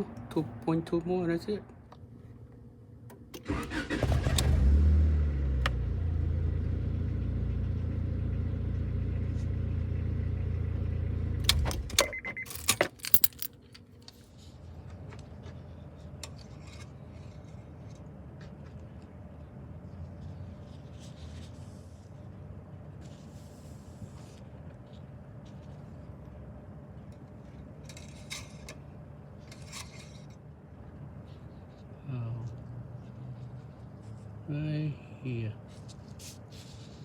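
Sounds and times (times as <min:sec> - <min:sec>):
car engine idling: 0:00.0 - 0:13.8
key clicks: 0:11.5 - 0:13.6
keys jangling: 0:11.5 - 0:14.0.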